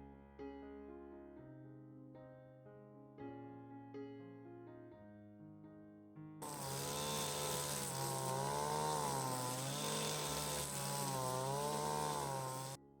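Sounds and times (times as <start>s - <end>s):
small petrol engine running hard: 6.4s - 12.8s.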